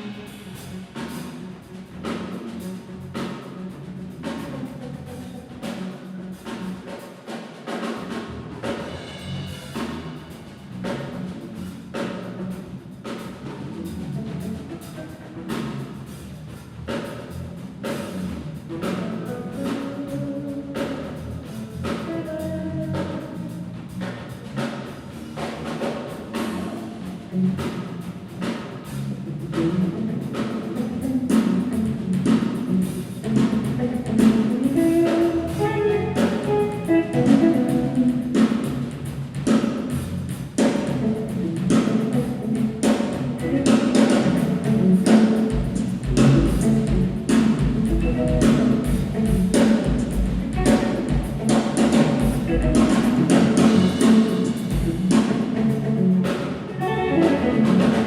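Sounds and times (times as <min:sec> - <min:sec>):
heavy deep bass: 0:00.0 - 0:07.0, 0:07.9 - 0:58.0
fast drum kit playing: 0:00.0 - 0:58.0
pitched notes: 0:29.5 - 0:38.8, 0:40.9 - 0:58.0.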